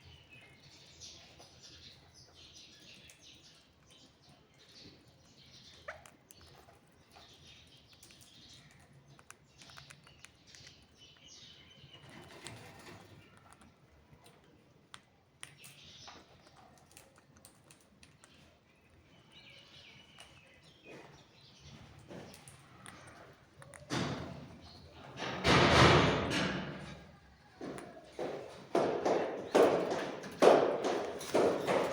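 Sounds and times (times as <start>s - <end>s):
parrot chirps and calls: 5.5s - 12.1s.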